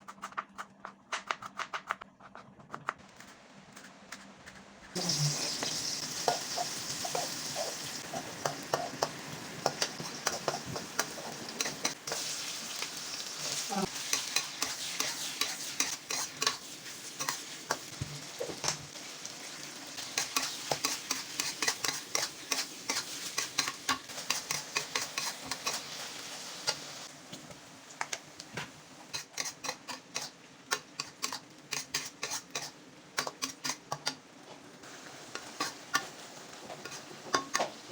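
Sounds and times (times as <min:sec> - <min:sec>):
food sizzling in a pan: 0:05.0 - 0:37.9
utensil scraping a pan: 0:13.5 - 0:17.8, 0:20.1 - 0:26.0, 0:31.0 - 0:33.8.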